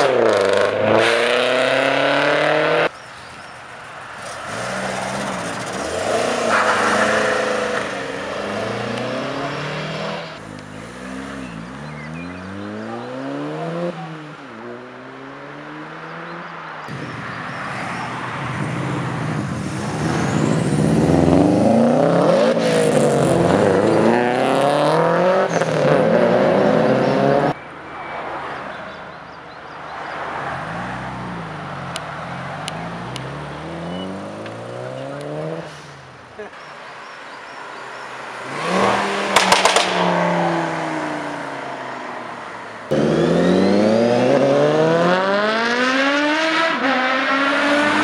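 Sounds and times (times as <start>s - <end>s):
car engines revving: 0.0s - 48.0s.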